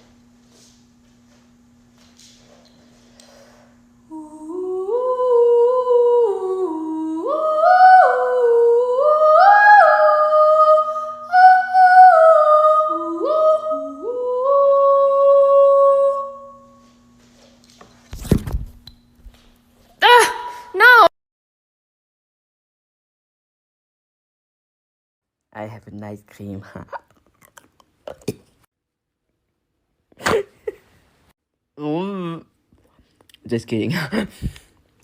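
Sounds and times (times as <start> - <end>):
person humming a tune: 4.0 - 16.6, 31.8 - 32.5.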